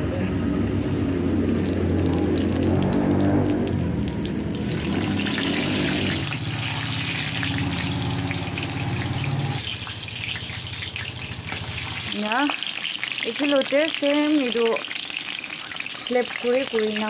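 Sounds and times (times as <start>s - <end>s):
vegetables sizzling in oil: 3.8s - 17.0s.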